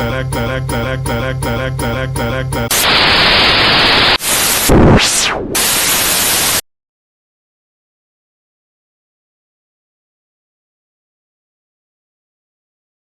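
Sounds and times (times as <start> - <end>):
commercial jingle music: 0.0 - 2.7
loud tv static: 2.7 - 6.6.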